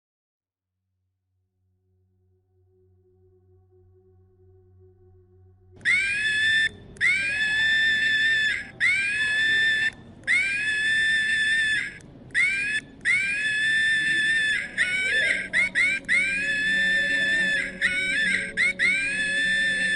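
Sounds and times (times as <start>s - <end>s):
animal screeching: 5.8s - 19.9s.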